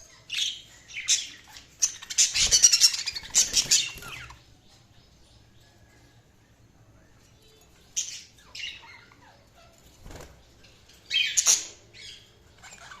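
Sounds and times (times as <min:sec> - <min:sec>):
budgerigars chirping harshly: 0:00.0 - 0:04.5, 0:08.0 - 0:13.0.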